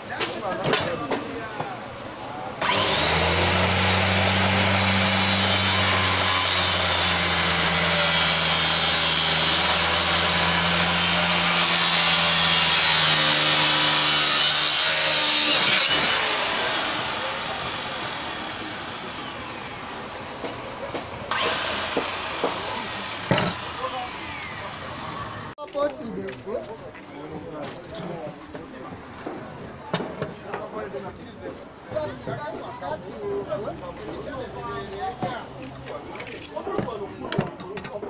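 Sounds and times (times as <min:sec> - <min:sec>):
circular saw cutting timber: 0:02.6 - 0:25.6.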